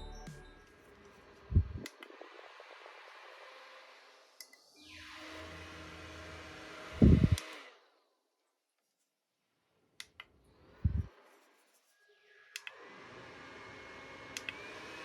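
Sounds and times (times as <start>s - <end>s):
small electric fan running: 5.2s - 7.7s, 12.6s - 15.0s.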